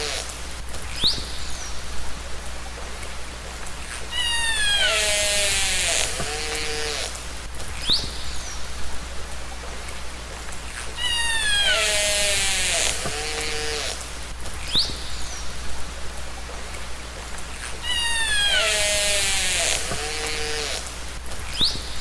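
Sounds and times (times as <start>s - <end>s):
orca whistle: 4.1s - 7.1s, 17.8s - 20.8s.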